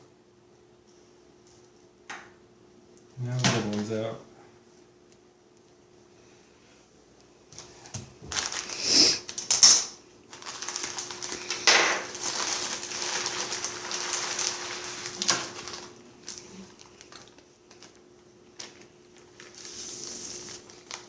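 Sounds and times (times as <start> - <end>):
plastic crinkling: 7.5 - 21.0
loud plastic crackles: 7.6 - 21.0.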